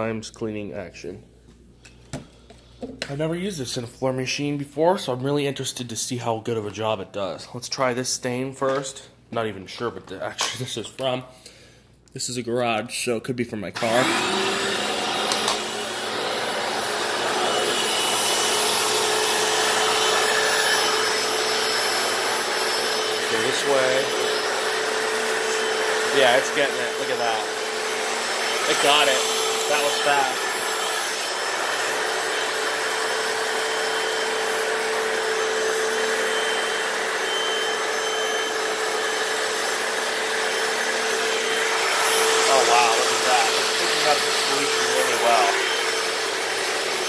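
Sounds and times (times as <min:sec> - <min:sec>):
floor cleaner motor running: 0:13.8 - 0:47.0.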